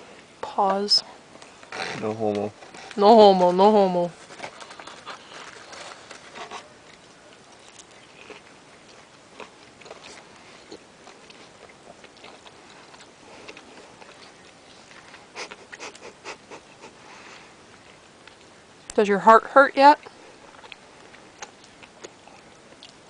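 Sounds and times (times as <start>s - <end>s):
person chewing and biting: 4.4s - 16.6s, 20.0s - 23.0s.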